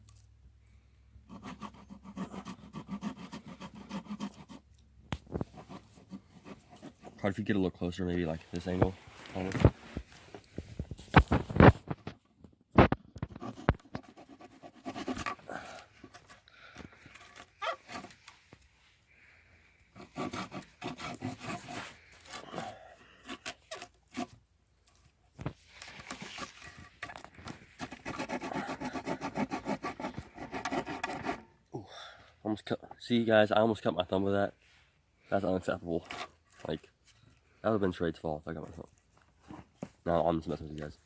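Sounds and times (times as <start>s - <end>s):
saw rasping through wood: 1.3s - 4.6s, 5.4s - 7.2s, 13.2s - 16.4s, 17.0s - 18.3s, 19.9s - 24.4s, 26.0s - 31.6s, 35.9s - 36.7s.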